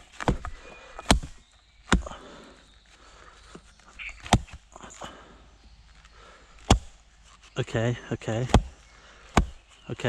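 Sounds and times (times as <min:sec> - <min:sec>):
axe chopping log: 0:00.0 - 0:02.3, 0:04.2 - 0:04.7, 0:06.6 - 0:07.0, 0:08.4 - 0:09.7.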